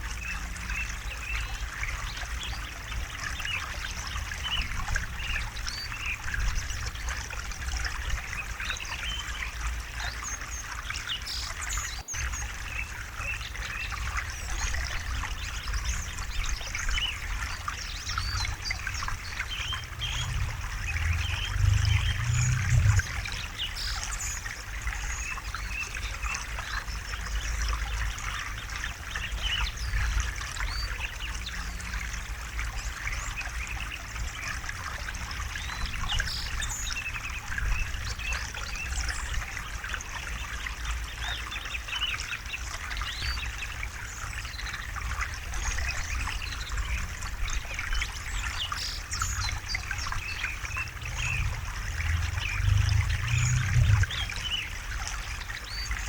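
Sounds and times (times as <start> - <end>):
river water babbling: 0.0 - 56.0
birds chirping: 7.9 - 31.7, 32.6 - 56.0
low rumble: 18.5 - 23.6, 49.9 - 55.1.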